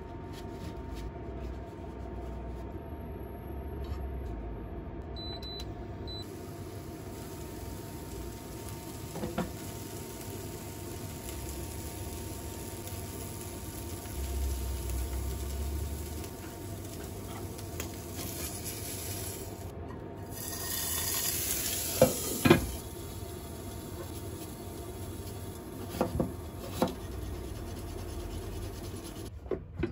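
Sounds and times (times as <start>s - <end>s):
food sizzling in a frying pan: 6.2s - 19.7s, 20.3s - 27.5s
utensil stirring and scraping: 25.8s - 29.3s.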